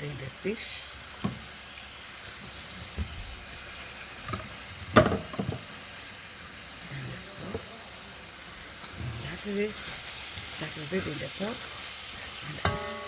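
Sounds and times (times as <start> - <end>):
faint steady hiss: 0.0 - 13.0
utensils knocking against pot: 12.6 - 13.0.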